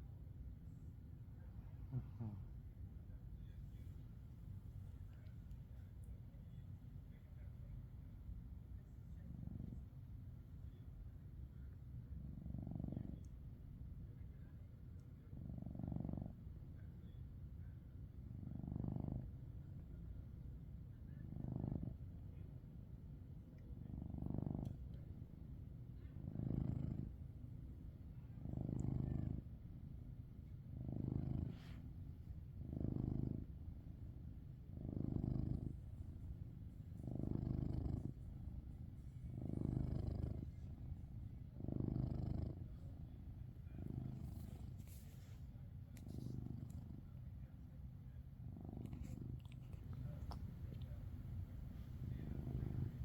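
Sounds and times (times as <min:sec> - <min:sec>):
cat snoring: 0:01.9 - 0:02.4, 0:15.3 - 0:16.4, 0:18.5 - 0:19.2, 0:21.3 - 0:22.0, 0:26.3 - 0:27.2, 0:28.4 - 0:29.4, 0:30.8 - 0:31.8, 0:32.6 - 0:33.5, 0:34.7 - 0:35.8, 0:37.0 - 0:38.3, 0:39.3 - 0:40.7, 0:41.6 - 0:42.8, 0:43.7 - 0:45.4, 0:48.5 - 0:53.0.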